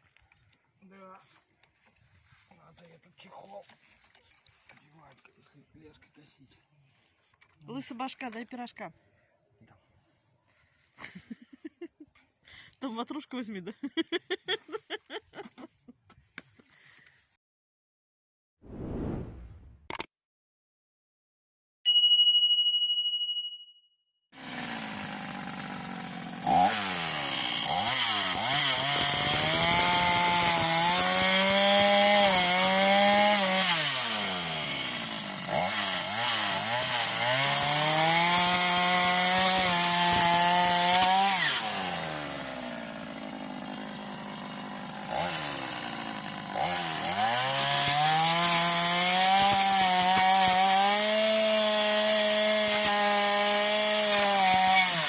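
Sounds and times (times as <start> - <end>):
brush cutter revving: 24.4 - 55.0.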